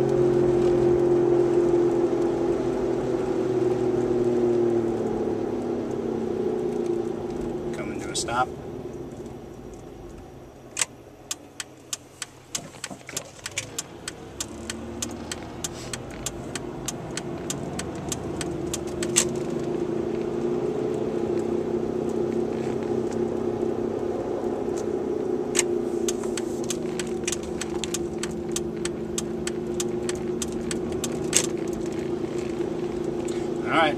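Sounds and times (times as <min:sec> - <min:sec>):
car slowing and pulling away: 0:00.0 - 0:33.9
sharp ticks: 0:10.7 - 0:19.4, 0:25.6 - 0:32.6
wheel bearing drone: 0:13.4 - 0:33.9.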